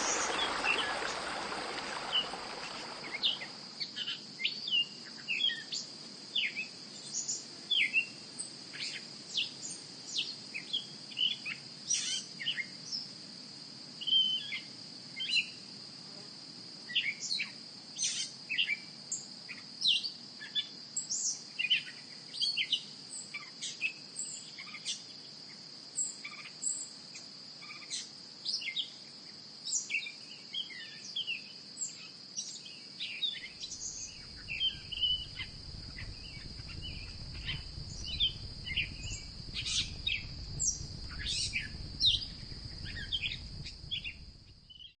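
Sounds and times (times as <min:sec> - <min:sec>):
birds chirping: 0:00.0 - 0:03.7, 0:33.6 - 0:44.9
high-pitched insect drone: 0:33.7 - 0:44.2.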